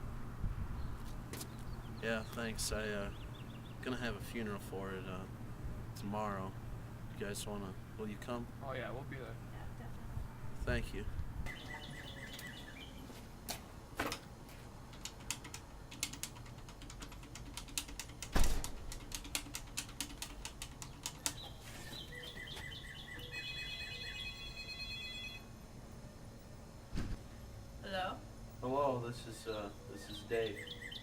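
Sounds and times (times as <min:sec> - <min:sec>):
rapid key clicking: 0:14.9 - 0:21.5
loud knock: 0:18.3 - 0:18.8
phone ringing tone: 0:22.1 - 0:25.5.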